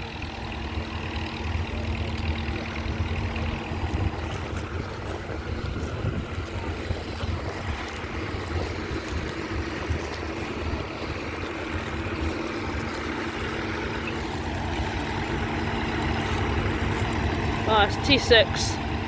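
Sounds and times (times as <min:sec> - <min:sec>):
tractor engines running: 0:00.0 - 0:19.0
wind on microphone: 0:03.8 - 0:11.8.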